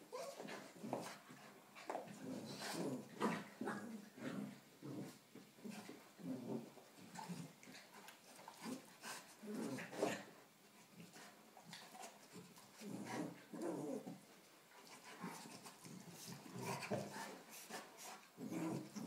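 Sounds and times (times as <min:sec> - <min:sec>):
dogs play-fighting vocalisations: 0:00.1 - 0:10.4, 0:14.8 - 0:19.0.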